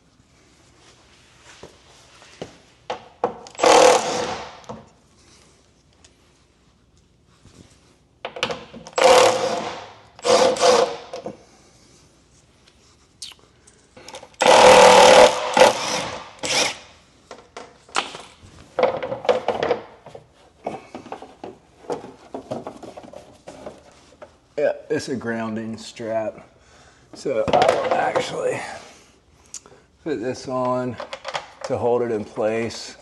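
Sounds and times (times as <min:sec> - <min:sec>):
power tool bursts: 0:03.5 - 0:04.6, 0:09.0 - 0:11.1, 0:14.4 - 0:16.9.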